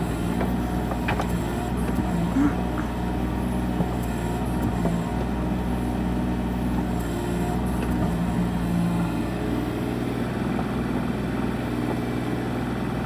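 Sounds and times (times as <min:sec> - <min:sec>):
diesel engine running: 0:00.0 - 0:13.0
light knocks and clanks: 0:00.3 - 0:02.0.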